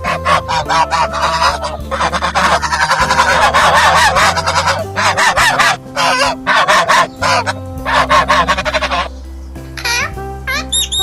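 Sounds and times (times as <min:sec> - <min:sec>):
geese honking: 0:00.0 - 0:09.2
background music: 0:00.0 - 0:11.0.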